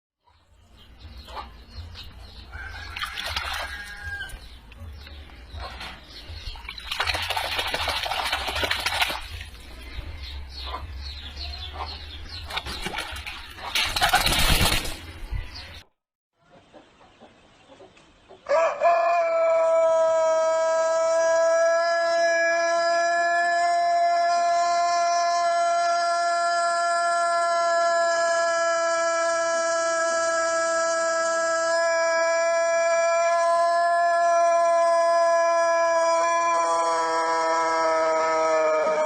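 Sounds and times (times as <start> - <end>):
chickens clucking: 1.0 - 3.2, 4.5 - 6.8, 9.8 - 18.6
rooster crowing: 2.5 - 4.5, 18.5 - 39.0.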